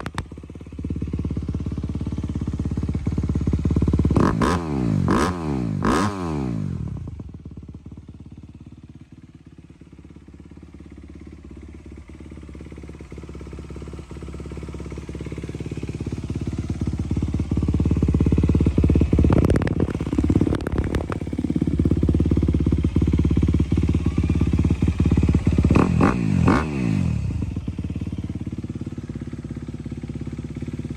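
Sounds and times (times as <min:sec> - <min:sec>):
dirt bike engine revving: 0:04.2 - 0:06.7, 0:25.6 - 0:27.3.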